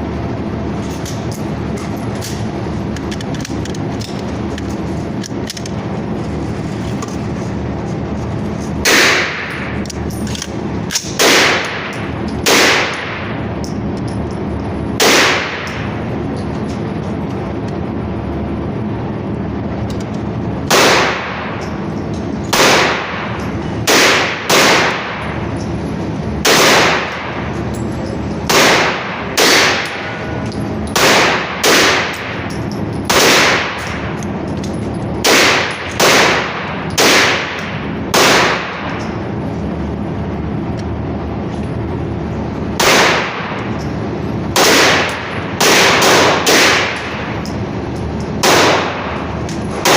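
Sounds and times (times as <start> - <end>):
firearm shots with ringing tail: 8.7 - 17.0, 20.4 - 39.4, 42.7 - 49.9.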